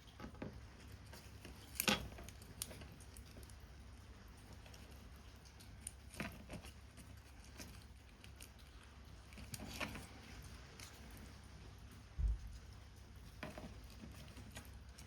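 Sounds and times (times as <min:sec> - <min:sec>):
small tools clicking and tapping: 0:00.1 - 0:03.6.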